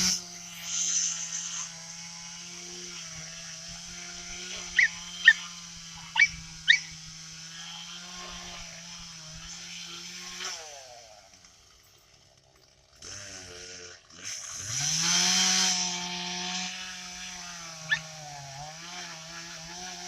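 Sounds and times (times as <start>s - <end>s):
small engine idling: 0.0s - 20.0s
high animal calls: 4.5s - 7.0s.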